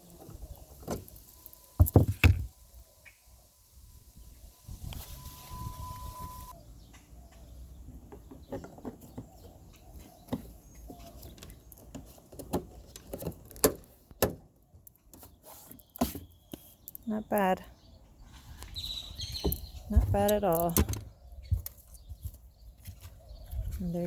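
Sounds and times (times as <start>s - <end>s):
steady beep: 4.3s - 6.6s.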